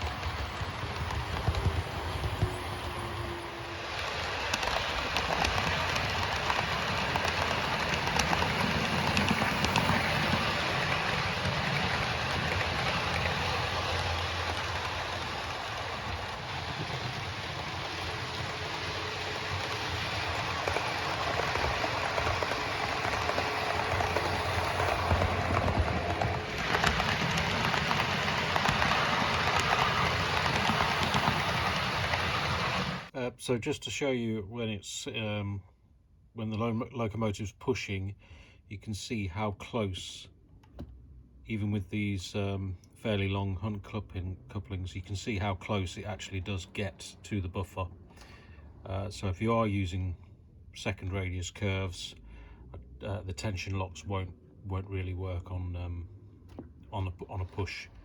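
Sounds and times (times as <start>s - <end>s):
wheels ticking over rail joints: 0.0s - 33.1s
model train rolling rumble: 0.0s - 33.2s.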